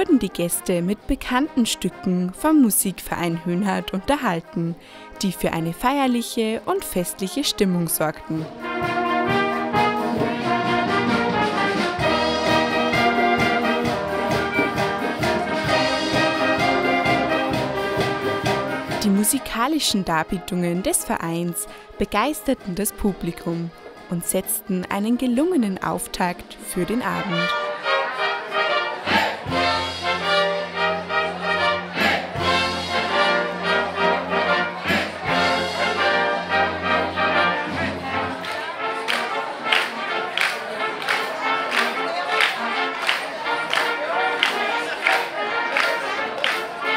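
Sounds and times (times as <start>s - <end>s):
brass band playing: 0.0s - 46.9s.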